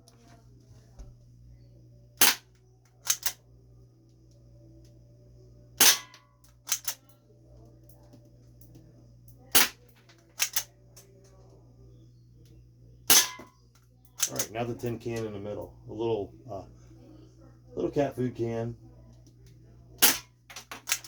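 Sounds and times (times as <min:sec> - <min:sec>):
airsoft pistol shots: 0:02.2 - 0:02.4, 0:05.8 - 0:07.0, 0:09.6 - 0:09.8, 0:13.1 - 0:13.5, 0:20.0 - 0:21.0.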